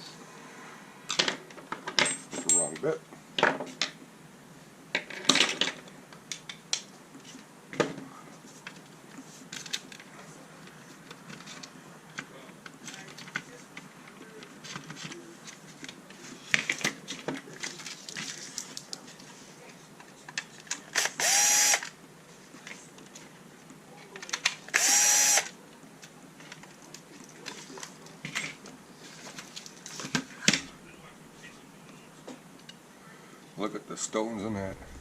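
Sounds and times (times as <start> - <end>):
powered screwdriver whirring: 21.0 - 21.9, 24.8 - 25.5.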